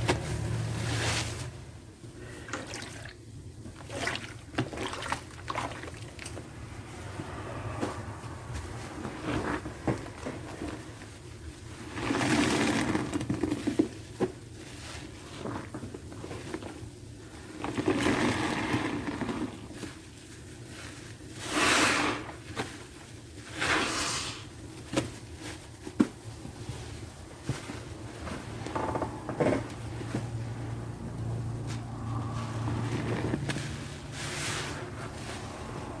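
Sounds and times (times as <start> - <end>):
soapy sponge squelching: 0.0 - 7.1.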